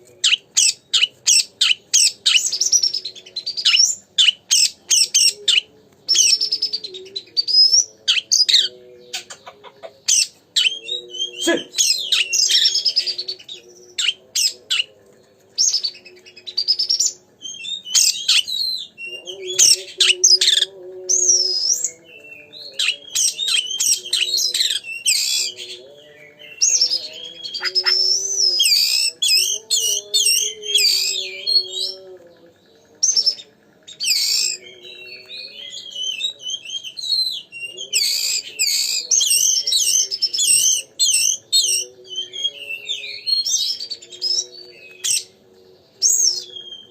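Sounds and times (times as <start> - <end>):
songbird whistling and trilling: 0.2 - 9.3, 15.6 - 25.6, 33.0 - 45.4, 46.0 - 46.9.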